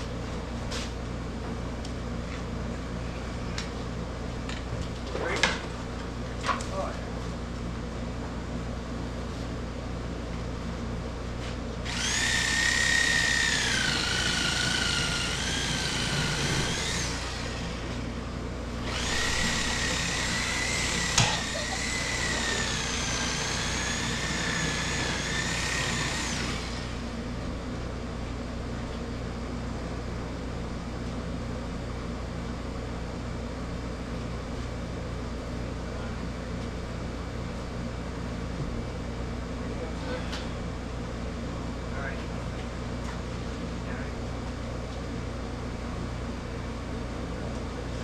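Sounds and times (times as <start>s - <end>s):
power tool motor whining: 11.8s - 18.1s, 18.8s - 27.1s.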